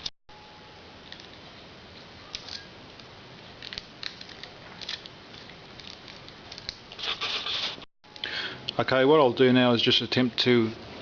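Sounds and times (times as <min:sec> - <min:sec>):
clicks and scratchy rustles: 0:02.3 - 0:07.9.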